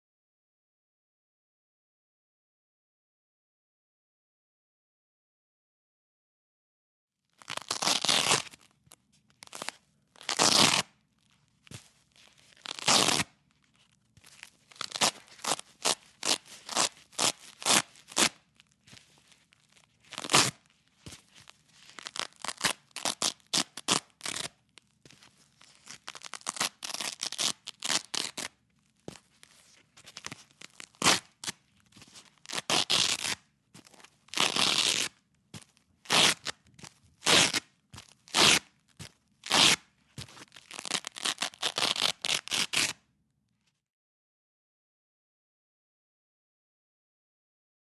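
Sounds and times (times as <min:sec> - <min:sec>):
velcro ripping: 0:07.4 - 0:08.7, 0:09.4 - 0:11.0, 0:11.7 - 0:13.4, 0:14.2 - 0:19.0, 0:19.7 - 0:24.6, 0:25.6 - 0:28.6, 0:30.0 - 0:43.0.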